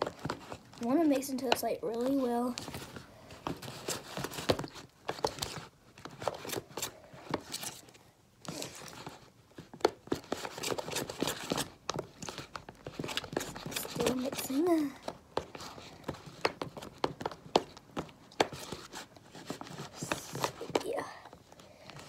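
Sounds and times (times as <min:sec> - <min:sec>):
spoon stirring sticky mixture: 0:10.3 - 0:21.2.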